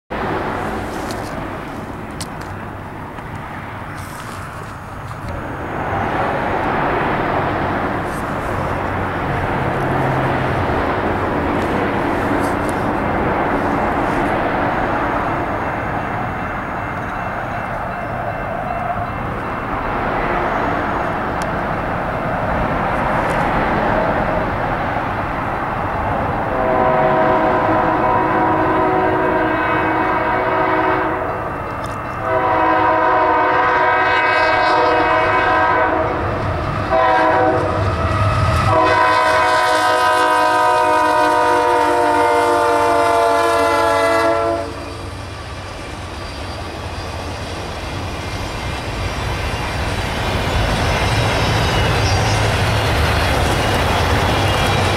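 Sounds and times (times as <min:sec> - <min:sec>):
passing train rumble: 0:00.1 - 0:54.9
locomotive air horn blasts: 0:26.5 - 0:31.4, 0:32.2 - 0:36.2, 0:36.9 - 0:37.8, 0:38.6 - 0:45.0.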